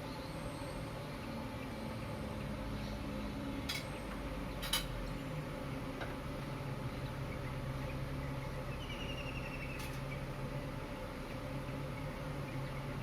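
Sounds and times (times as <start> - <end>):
distant traffic hum: 0.0 - 13.0
chirping trill: 7.3 - 10.2.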